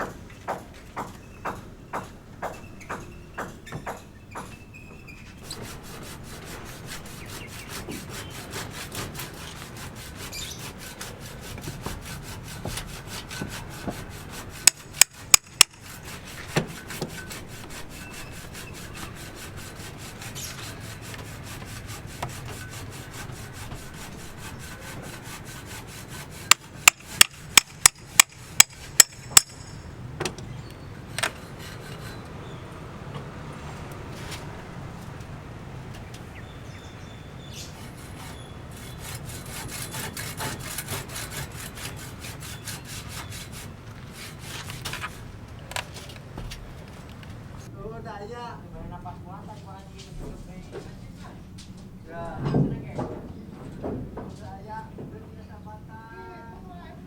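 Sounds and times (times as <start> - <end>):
hand tool scraping: 5.4 - 30.0, 30.8 - 32.6, 34.0 - 35.2, 37.5 - 47.2
hammer-like knocks: 12.6 - 15.9, 26.5 - 30.4.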